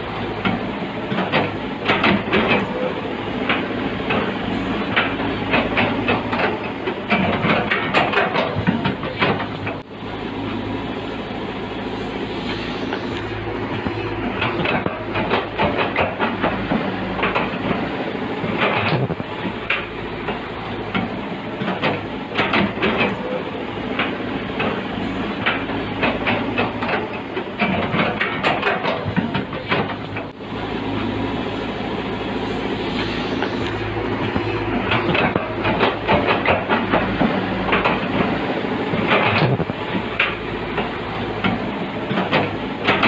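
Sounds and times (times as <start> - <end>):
diesel engine running: 0.0 - 43.0
clanks and knocks: 0.4 - 4.3, 4.9 - 9.8, 13.2 - 17.8, 18.4 - 23.4, 25.4 - 30.4, 33.4 - 43.0.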